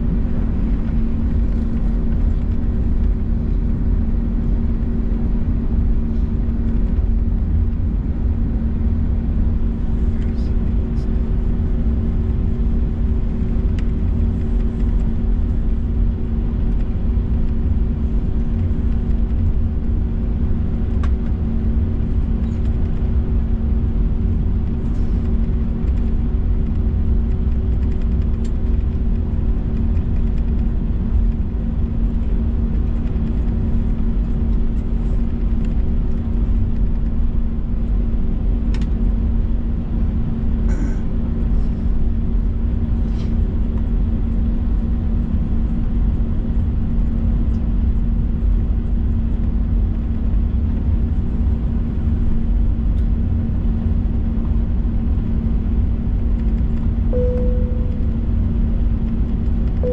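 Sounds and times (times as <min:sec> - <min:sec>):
jet engine cabin roar: 0:00.0 - 0:38.9, 0:51.2 - 0:59.9.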